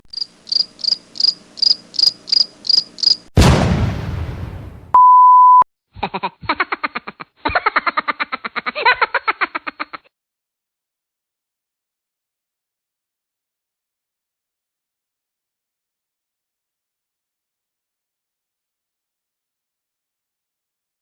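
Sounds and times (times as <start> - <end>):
cricket-like chirping: 0.1 - 3.3
fast rattling buzz: 0.1 - 3.3
loud crash: 3.4 - 4.9
short steady beep: 4.9 - 5.6.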